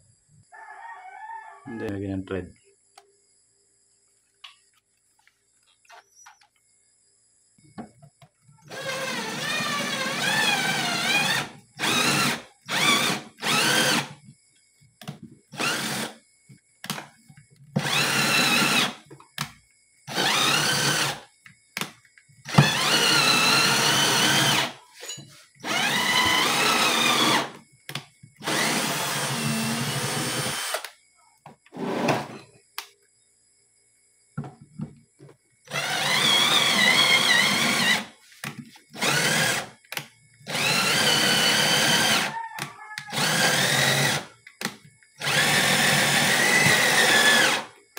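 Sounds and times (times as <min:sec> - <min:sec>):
cordless drill motor bursts: 0:08.7 - 0:14.2, 0:15.6 - 0:16.2, 0:17.8 - 0:19.0, 0:20.1 - 0:21.2, 0:22.5 - 0:24.8, 0:25.6 - 0:27.6, 0:28.4 - 0:30.9, 0:35.7 - 0:38.1, 0:39.0 - 0:39.8, 0:40.5 - 0:42.3, 0:43.1 - 0:44.3, 0:45.2 - 0:47.8.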